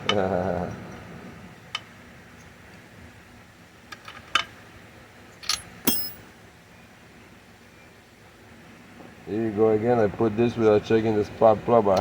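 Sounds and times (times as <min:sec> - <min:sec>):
metallic clinks of small tools: 0:05.4 - 0:06.3.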